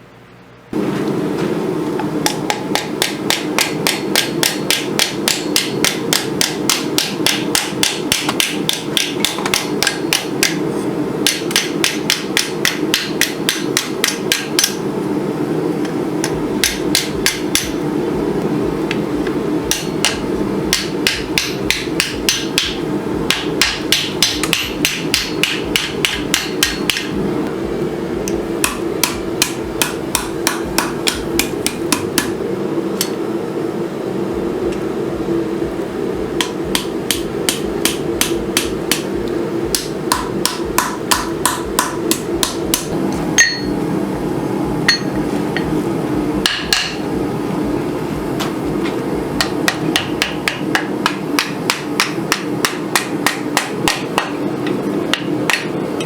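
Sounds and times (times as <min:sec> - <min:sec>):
hammer striking steel on anvil: 0:02.2 - 0:10.6, 0:11.2 - 0:14.8, 0:16.2 - 0:17.8, 0:19.7 - 0:27.2, 0:28.2 - 0:32.4, 0:36.4 - 0:39.1, 0:39.7 - 0:43.8, 0:44.9 - 0:45.7, 0:46.4 - 0:47.0, 0:49.4 - 0:55.8.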